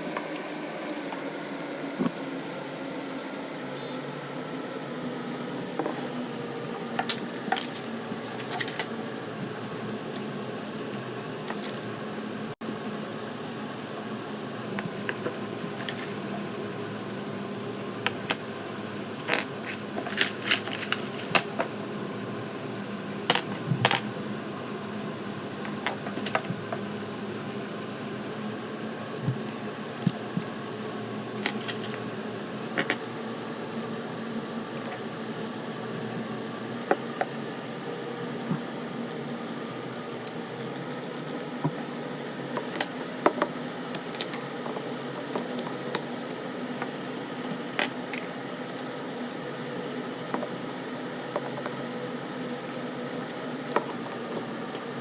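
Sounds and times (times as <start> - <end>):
steady background hum: 0.0 - 55.0
plastic parts clicking and clinking: 19.3 - 21.8.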